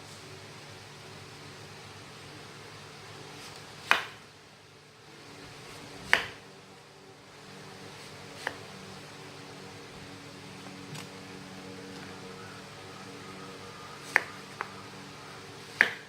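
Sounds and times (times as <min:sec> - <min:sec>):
steady low hum: 0:00.0 - 0:16.0
knife cutting breadfruit: 0:06.0 - 0:06.4, 0:08.0 - 0:08.6, 0:14.0 - 0:14.7.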